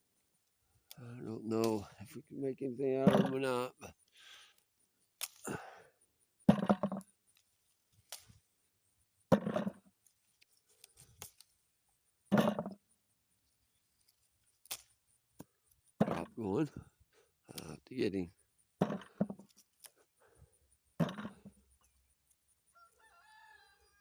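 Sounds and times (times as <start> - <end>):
fruit picking knocks: 3.0 - 3.6, 5.2 - 5.5, 6.4 - 7.1, 9.3 - 10.1, 12.3 - 12.8, 14.6 - 16.9, 18.8 - 19.9, 20.9 - 21.6
leaves rustling: 5.0 - 5.4, 7.3 - 8.8, 10.0 - 11.9, 13.3 - 15.0.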